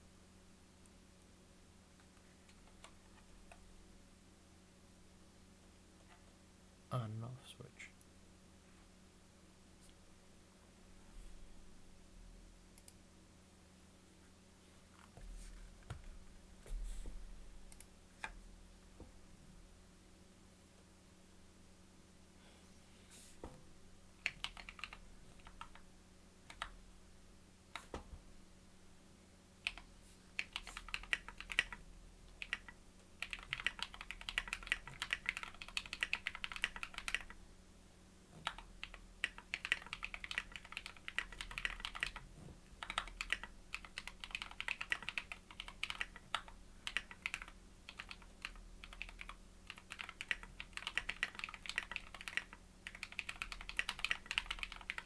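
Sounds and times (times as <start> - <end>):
mechanical keyboard typing: 24.2 - 25.8, 26.5 - 26.8, 29.6 - 37.4, 38.4 - 55.0.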